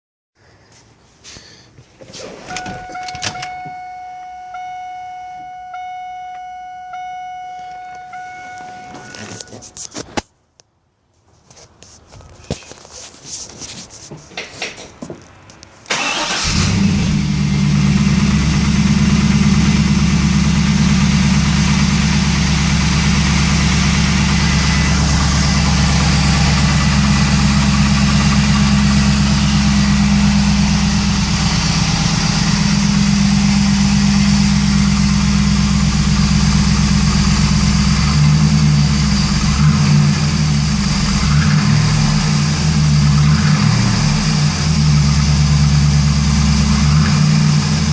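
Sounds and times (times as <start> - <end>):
car engine starting and idling: 2.5 - 9.7, 15.9 - 47.9.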